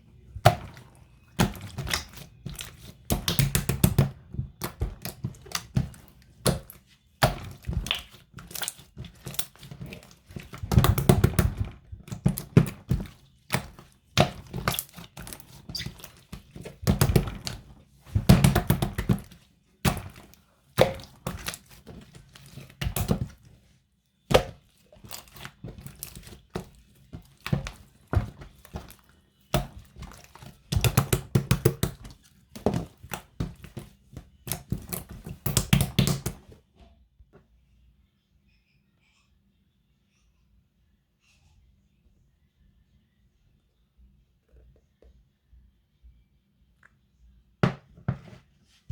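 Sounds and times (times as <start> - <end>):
hands squishing slime: 0.1 - 36.6.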